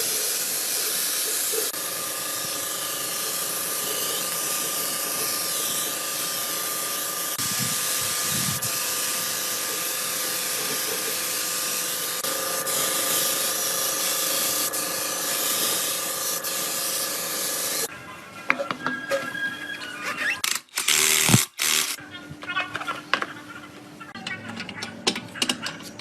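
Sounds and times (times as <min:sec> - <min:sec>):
spraying hiss: 0:03.2 - 0:17.9.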